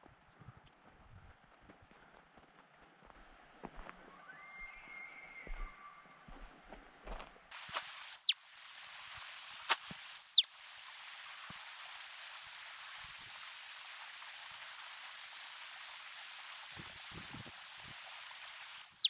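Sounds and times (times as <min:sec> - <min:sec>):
steady high hiss: 0:07.5 - 0:19.0
bird chirping: 0:08.2 - 0:08.4, 0:10.2 - 0:10.5, 0:18.8 - 0:19.0.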